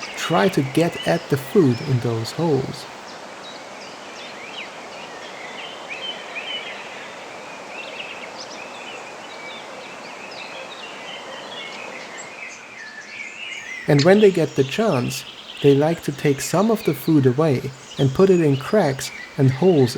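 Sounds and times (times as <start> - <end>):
small birds chirping: 0.0 - 3.1, 13.4 - 19.9
outdoor background hiss: 0.0 - 19.9.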